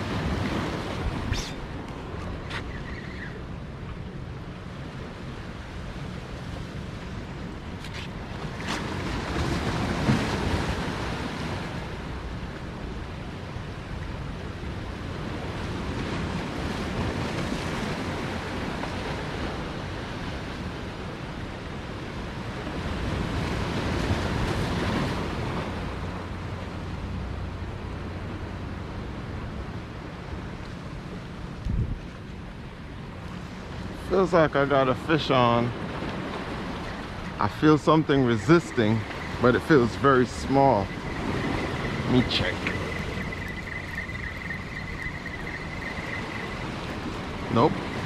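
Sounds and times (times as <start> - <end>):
ocean surf washing: 0.0 - 48.0
wind buffeting microphone: 31.2 - 34.0, 35.6 - 48.0.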